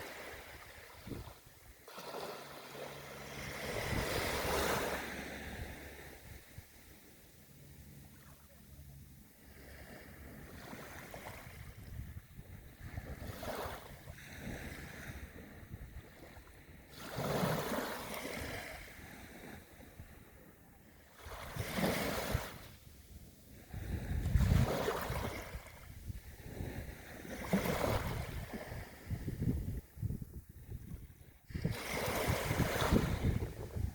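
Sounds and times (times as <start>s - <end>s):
waves breaking on a beach: 0.0s - 33.9s.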